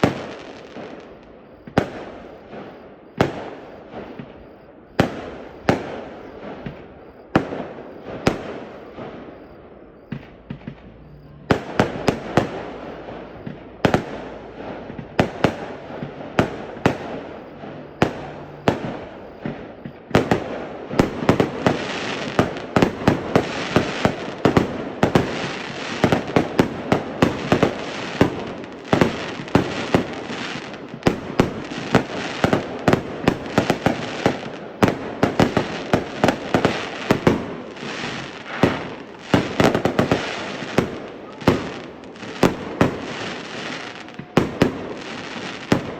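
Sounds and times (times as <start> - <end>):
fireworks bursting in bangs: 0.0 - 45.9.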